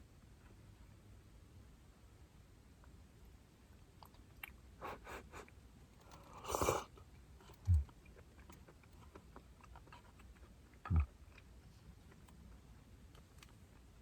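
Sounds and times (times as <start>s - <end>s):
slurping soup: 6.1s - 7.0s.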